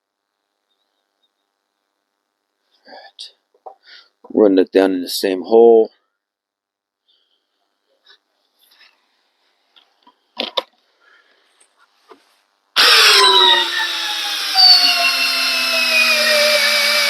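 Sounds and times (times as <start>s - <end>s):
drill whining under load: 12.8s - 17.0s.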